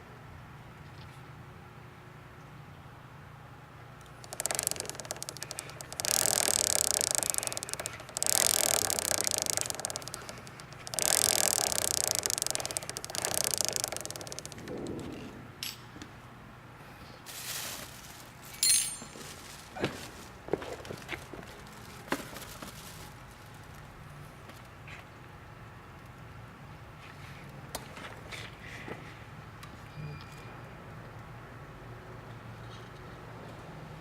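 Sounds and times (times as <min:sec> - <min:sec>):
chain clicks: 0:04.0 - 0:15.0.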